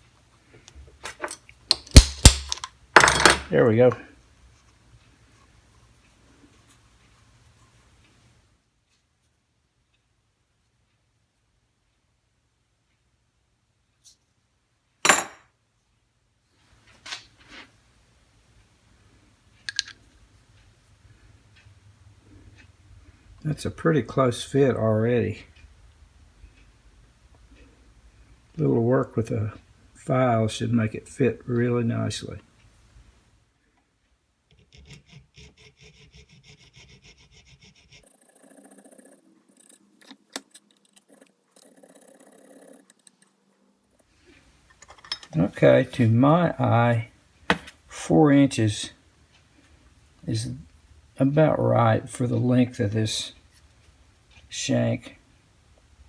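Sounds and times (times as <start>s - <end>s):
metal parts clinking: 1.0s - 3.5s, 19.7s - 20.0s
sharp click: 1.7s - 2.7s
hand file scraping steel: 34.5s - 43.2s
handling and scraping: 37.9s - 46.2s.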